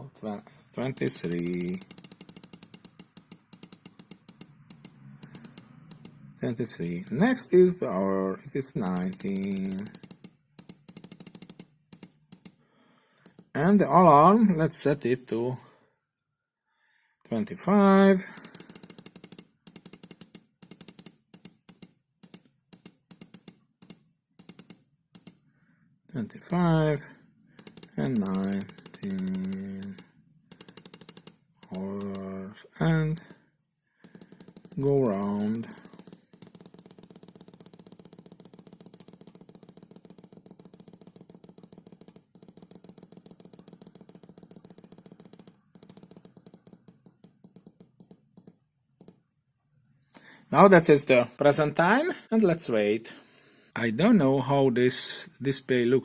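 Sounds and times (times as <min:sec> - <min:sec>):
rapid even clicking: 0:00.8 - 0:06.2, 0:08.6 - 0:12.6, 0:18.2 - 0:25.4, 0:27.6 - 0:33.4, 0:34.0 - 0:49.2
small push-buttons clicking: 0:00.8 - 0:06.2, 0:08.8 - 0:12.6.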